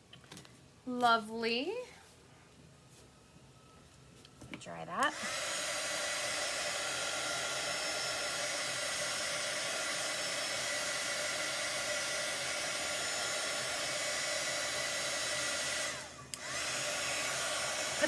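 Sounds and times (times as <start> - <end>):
electric dryer blowing: 5.0 - 18.0.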